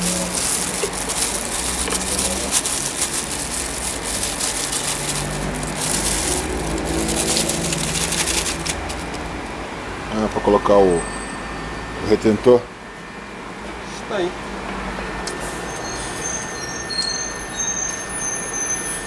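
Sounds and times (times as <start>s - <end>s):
ratchet clicking and rattling: 0.0s - 9.2s.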